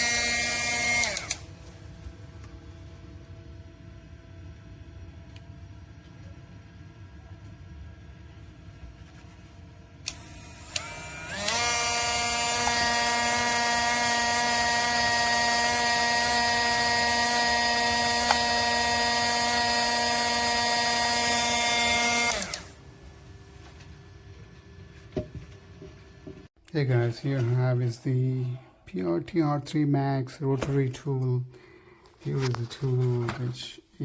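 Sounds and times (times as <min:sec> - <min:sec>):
rotary tool motor whine: 0:00.0 - 0:01.5, 0:10.0 - 0:22.8.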